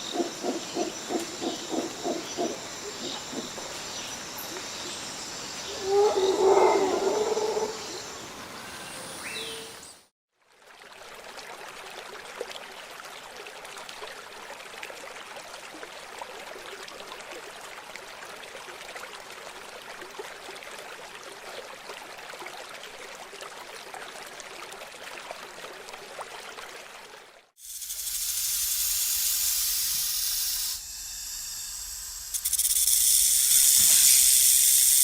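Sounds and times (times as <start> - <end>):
river water flowing and babbling: 0.0 - 27.5.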